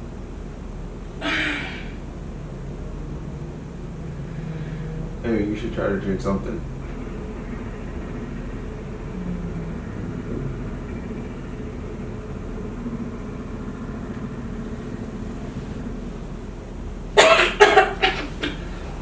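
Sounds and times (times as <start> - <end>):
low background hum: 0.0 - 19.0
loud sudden cough: 1.2 - 1.9, 17.2 - 18.6.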